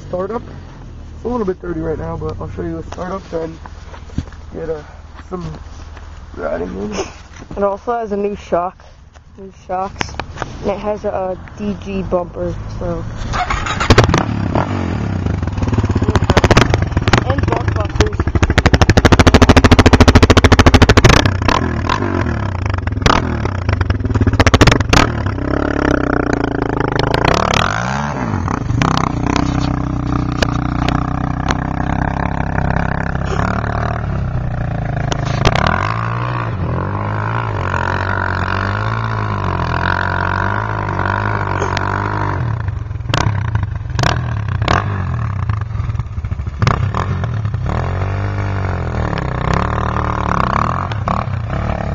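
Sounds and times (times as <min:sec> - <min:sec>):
quad bike engine revving: 0:10.8 - 0:51.9.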